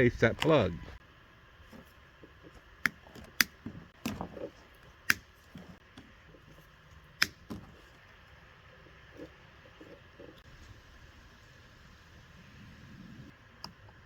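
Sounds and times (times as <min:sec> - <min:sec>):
sharp snips and clicks: 0:07.2 - 0:07.4.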